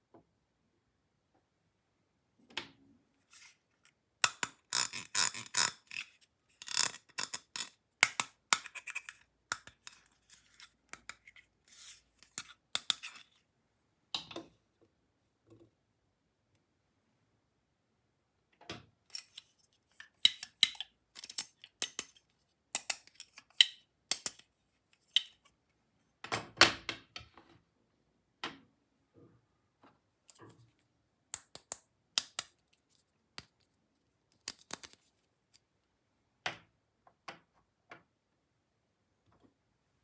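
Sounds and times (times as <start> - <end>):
plastic clicks taps and crinkles: 6.6 - 11.4, 18.6 - 22.2, 22.8 - 25.5, 31.4 - 35.7.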